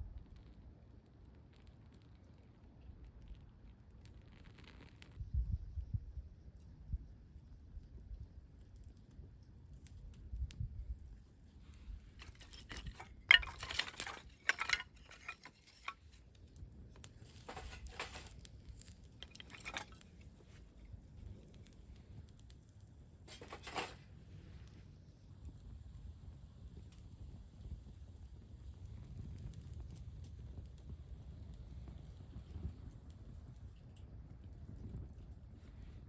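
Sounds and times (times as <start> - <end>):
wind rumble on microphone: 5.0 - 13.2, 24.1 - 36.0
rustling and crinkling handling: 11.6 - 20.9, 23.3 - 24.1.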